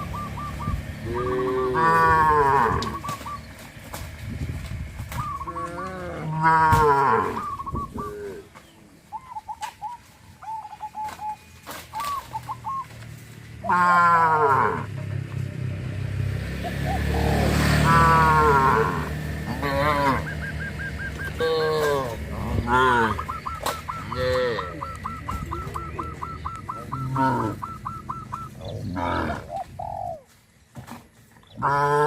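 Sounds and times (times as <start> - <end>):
cows mooing: 1.0 - 3.1, 5.4 - 8.5, 13.6 - 15.0, 17.0 - 29.6, 31.6 - 32.0.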